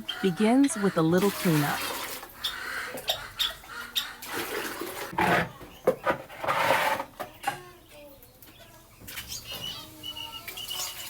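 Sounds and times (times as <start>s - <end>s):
rustling and scraping: 4.3s - 7.4s.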